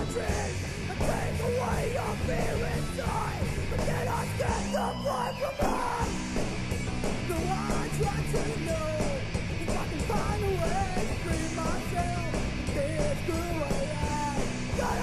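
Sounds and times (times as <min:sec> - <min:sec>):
rock music with shouted vocals: 0:00.0 - 0:15.0.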